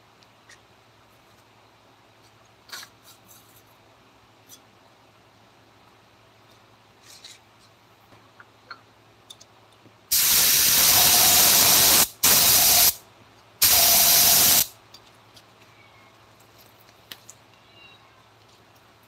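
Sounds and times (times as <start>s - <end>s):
compressed air hissing from nozzle: 10.1s - 13.0s, 13.6s - 14.7s.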